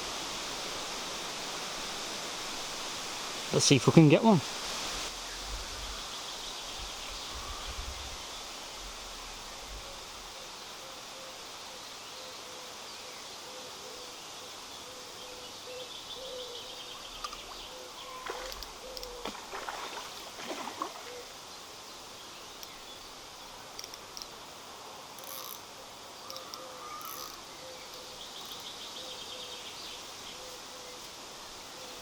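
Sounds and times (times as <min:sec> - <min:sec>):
shallow river flowing: 0:00.0 - 0:10.4, 0:16.8 - 0:28.5
birds calling: 0:15.7 - 0:21.4.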